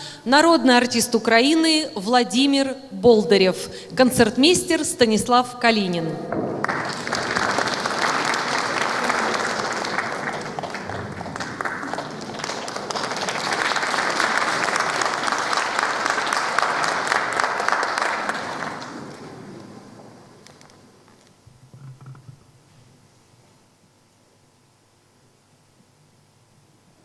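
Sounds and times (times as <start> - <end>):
audience applauding: 6.3 - 20.7.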